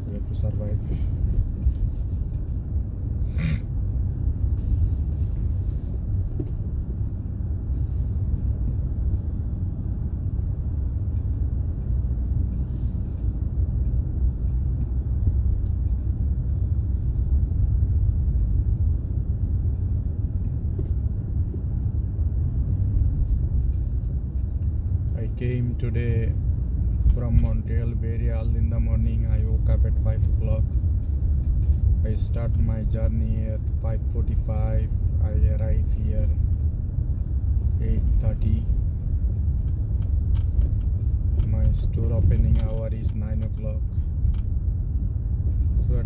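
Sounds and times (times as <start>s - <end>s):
car engine and tyres rumble: 0.0s - 46.0s.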